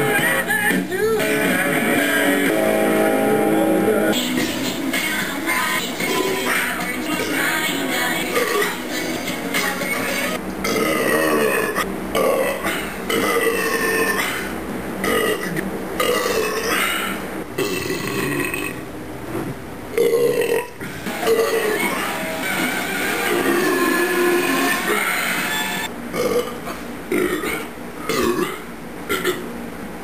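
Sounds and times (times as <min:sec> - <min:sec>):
man burping loudly: 0:10.6 - 0:18.8, 0:20.0 - 0:22.0, 0:26.2 - 0:29.5.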